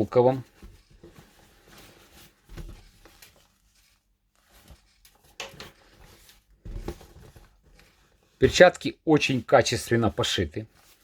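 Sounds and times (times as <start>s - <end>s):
fabric rustling: 0.0s - 11.0s
soft knocks of gloves: 0.3s - 3.6s.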